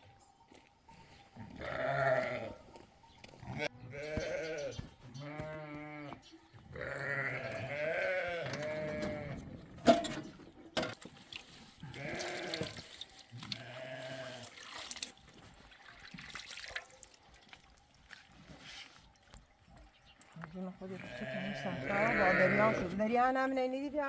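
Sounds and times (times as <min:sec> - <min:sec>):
livestock bleating: 0:01.4 - 0:02.7, 0:03.4 - 0:09.4, 0:11.8 - 0:12.9, 0:13.5 - 0:14.5, 0:20.9 - 0:23.1
milk splashing: 0:11.0 - 0:20.6.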